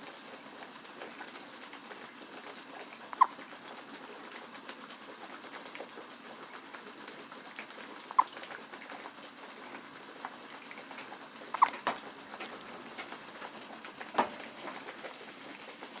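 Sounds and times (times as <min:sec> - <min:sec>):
baby hiccupping: 0:08.1 - 0:08.4, 0:11.5 - 0:11.9.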